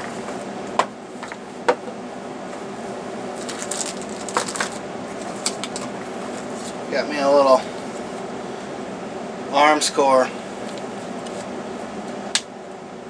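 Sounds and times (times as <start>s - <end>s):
package rustling: 3.4s - 6.8s.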